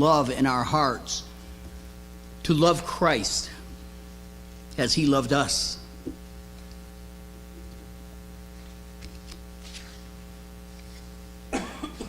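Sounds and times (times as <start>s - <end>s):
man's voice: 0.0s - 1.3s, 2.4s - 3.7s, 4.8s - 5.9s
electrical mains hum: 0.0s - 12.0s.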